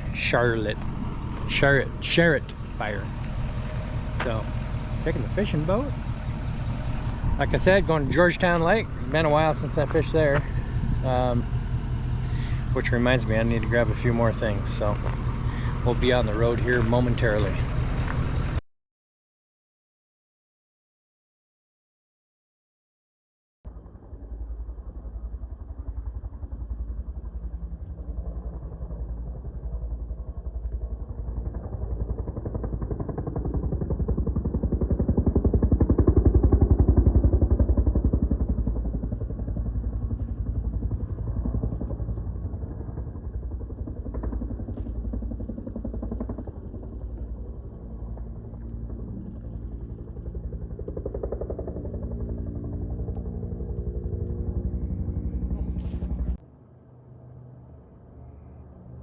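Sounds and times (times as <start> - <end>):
road noise: 0.0 - 18.6
vehicle engine running: 0.0 - 18.6, 23.7 - 56.4.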